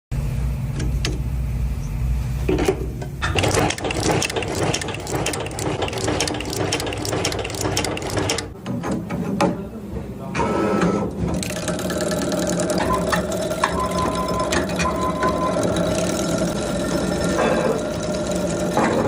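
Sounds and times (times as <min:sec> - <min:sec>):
machine humming: 0:03.2 - 0:08.6, 0:11.1 - 0:19.0
mechanical rattle of rapid clicks: 0:03.2 - 0:08.6, 0:11.3 - 0:19.0.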